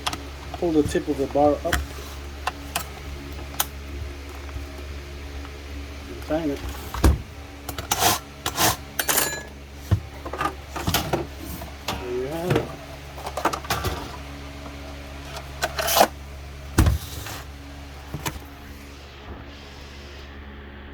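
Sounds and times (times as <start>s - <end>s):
steady low hum: 0.0s - 20.9s
tools clicking and knocking: 7.7s - 11.3s.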